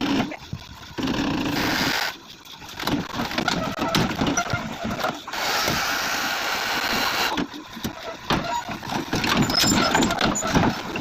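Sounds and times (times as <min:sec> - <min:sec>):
excavator metal clanks: 0:02.5 - 0:05.9, 0:07.3 - 0:11.0.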